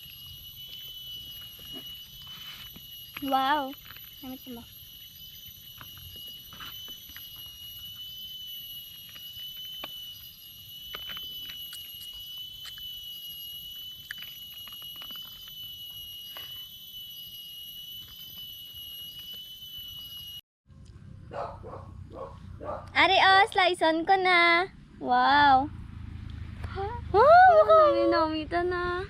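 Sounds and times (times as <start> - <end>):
high-pitched ringing drone: 0.0 - 20.4, 22.1 - 29.0.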